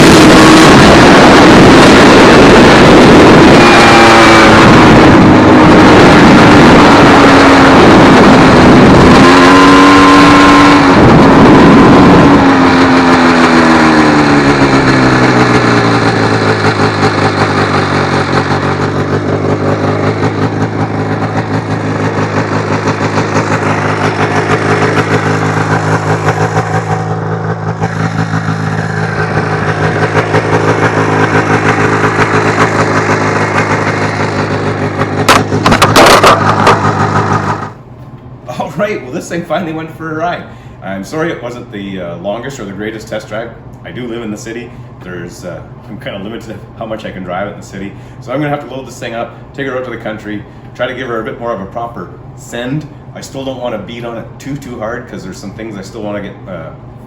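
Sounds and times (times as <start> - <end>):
snowmobile engine revving and idling: 0.0 - 37.8.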